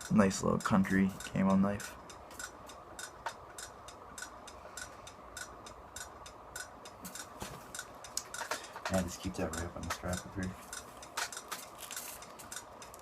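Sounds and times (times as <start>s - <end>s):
faint steady ticking: 0.0s - 13.0s.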